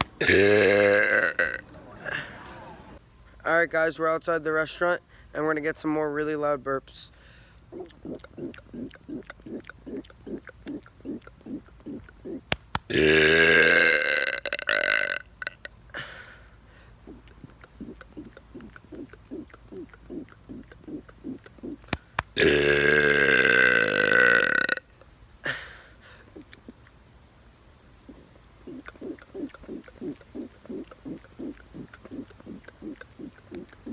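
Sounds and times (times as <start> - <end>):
man burping: 0.0 - 2.2, 12.9 - 15.7, 22.2 - 25.7.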